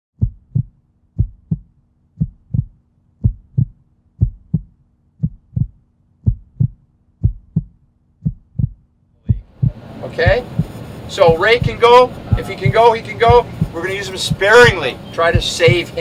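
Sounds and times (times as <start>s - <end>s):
heartbeat thumps: 0.2s - 16.0s
faint steady hum: 9.3s - 16.0s.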